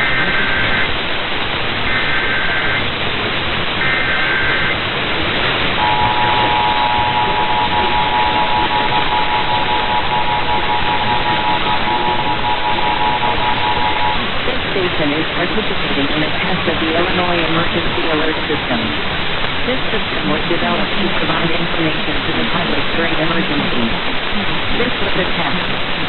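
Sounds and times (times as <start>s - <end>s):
two-tone attention signal: 0.0s - 0.9s, 1.9s - 2.8s, 3.8s - 4.8s, 5.8s - 14.3s
screechy data bursts: 0.0s - 1.0s, 1.8s - 2.9s, 3.8s - 4.8s, 5.8s - 14.3s
radio static hiss: 0.0s - 26.0s.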